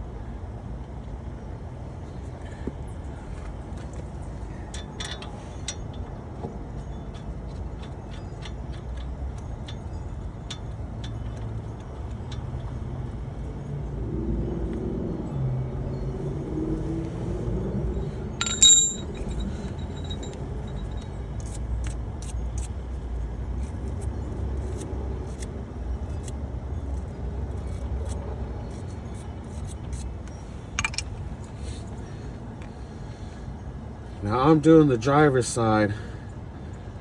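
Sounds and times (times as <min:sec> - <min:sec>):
steady low rumble: 0:09.6 - 0:21.4
sharp metal clink: 0:18.3 - 0:21.6.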